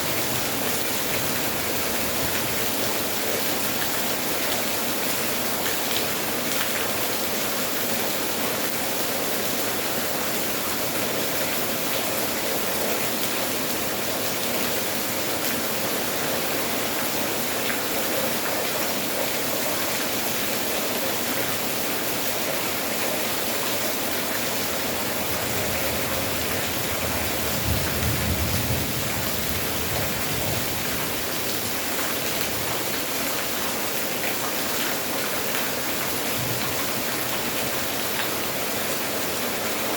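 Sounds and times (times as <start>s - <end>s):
heavy rainfall: 0.0s - 39.9s.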